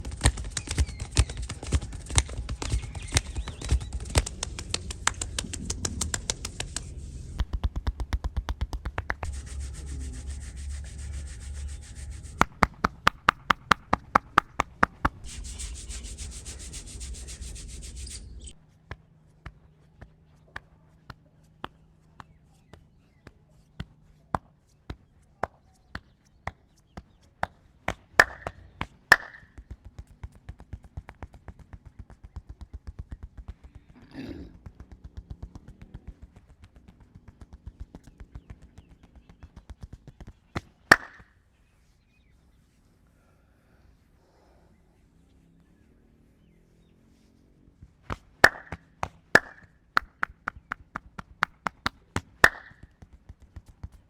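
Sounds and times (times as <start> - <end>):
hands tapping and slapping: 0.0 - 9.4, 12.4 - 16.2, 18.9 - 34.0, 34.6 - 41.3, 48.1 - 54.0
hands rubbing: 0.0 - 18.6, 28.0 - 29.4, 39.6 - 41.2, 48.1 - 53.8.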